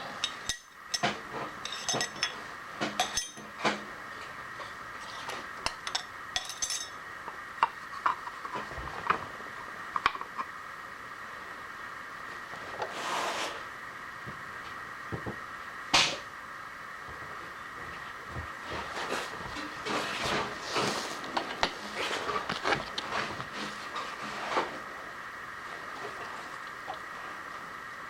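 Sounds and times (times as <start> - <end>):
metal tools clinking: 3.0 - 3.5, 5.9 - 7.0.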